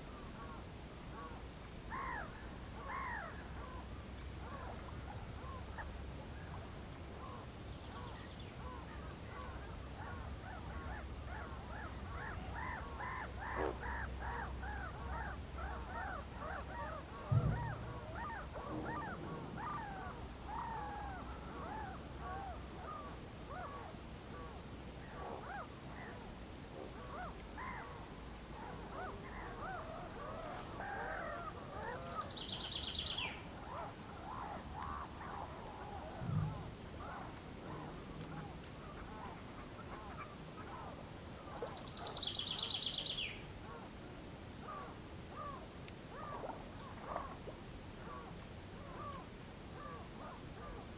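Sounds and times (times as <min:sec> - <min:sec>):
low steady rumble: 0:17.1 - 0:22.2, 0:35.7 - 0:39.3
dull thump: 0:17.3 - 0:19.5.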